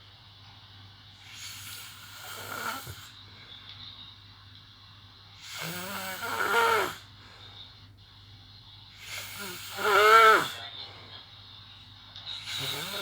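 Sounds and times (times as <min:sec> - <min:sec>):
person snoring: 0:01.3 - 0:03.2, 0:05.4 - 0:07.1, 0:09.0 - 0:10.6, 0:12.4 - 0:13.0.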